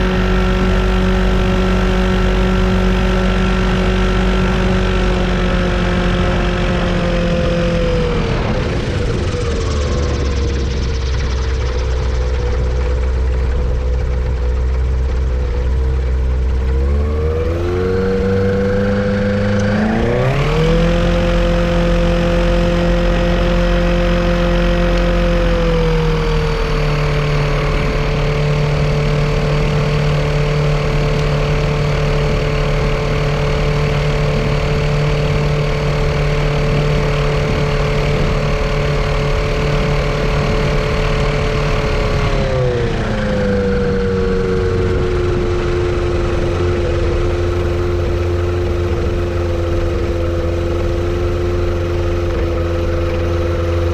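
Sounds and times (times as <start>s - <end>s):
airplane engine revving: 0.0s - 53.9s.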